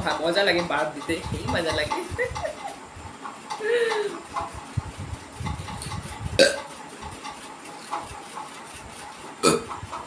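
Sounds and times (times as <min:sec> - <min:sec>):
woman burping: 0:06.4 - 0:06.6, 0:09.4 - 0:09.7.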